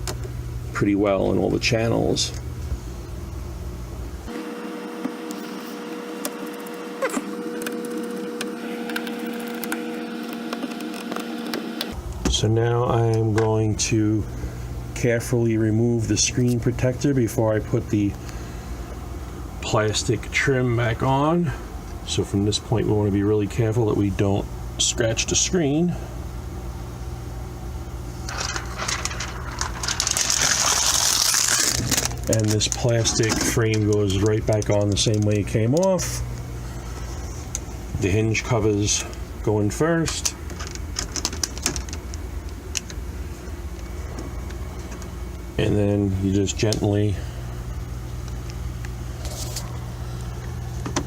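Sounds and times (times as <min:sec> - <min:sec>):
steady low hum: 0:00.0 - 0:51.0
plastic film crackling and rustling: 0:28.2 - 0:35.5, 0:40.4 - 0:42.9.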